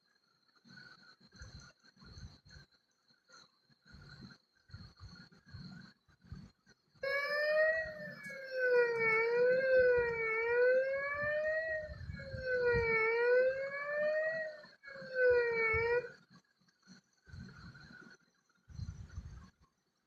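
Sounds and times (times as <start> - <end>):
siren-like wail: 7.0 - 16.2.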